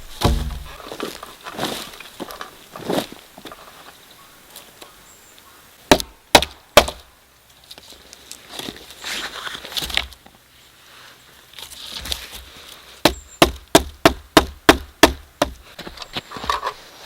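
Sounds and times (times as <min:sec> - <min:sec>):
tool chopping into wood: 0:00.0 - 0:00.8, 0:05.9 - 0:07.0, 0:13.0 - 0:15.6
wood knocking and rustling: 0:00.0 - 0:03.7.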